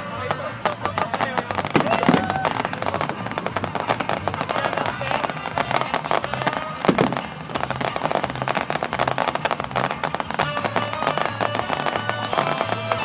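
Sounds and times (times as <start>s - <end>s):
fireworks crackling: 0.0s - 13.0s.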